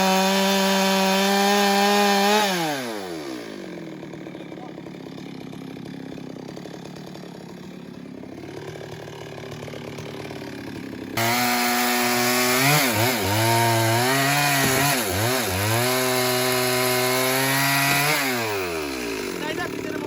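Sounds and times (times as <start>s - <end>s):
chainsaw cutting wood: 0.0s - 20.0s.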